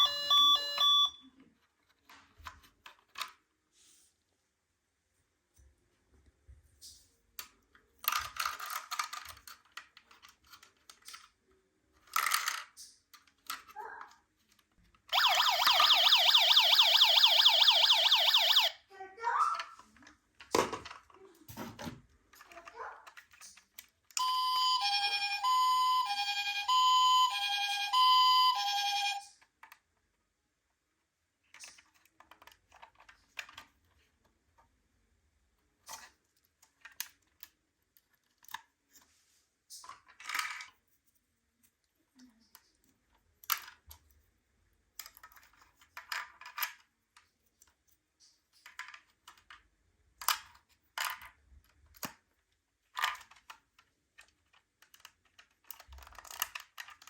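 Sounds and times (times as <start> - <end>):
toy siren warbling: 0.0 - 1.1, 15.1 - 18.8, 24.2 - 29.2
two-tone toy siren: 0.0 - 1.2, 15.1 - 18.9, 24.2 - 29.3
toy clicks and rattles: 7.4 - 14.6, 39.7 - 41.0, 42.5 - 44.2, 44.9 - 57.0.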